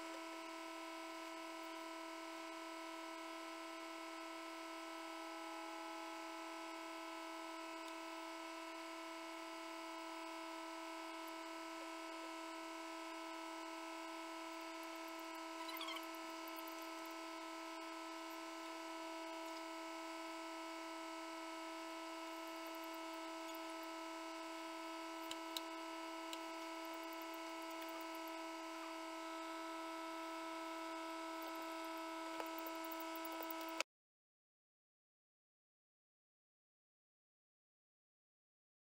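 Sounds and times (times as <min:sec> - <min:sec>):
fan motor humming: 0:04.0 - 0:33.8.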